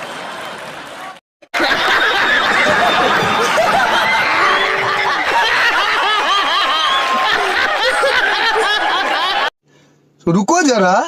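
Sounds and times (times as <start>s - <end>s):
many voices laughing: 1.5s - 9.6s.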